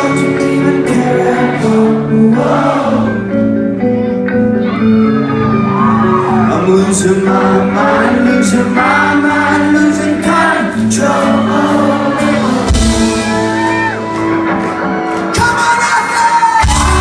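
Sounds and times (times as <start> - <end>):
lead vocal singing: 0.0 - 3.8, 6.2 - 14.0, 15.3 - 17.0
live rock band playing: 0.0 - 17.0.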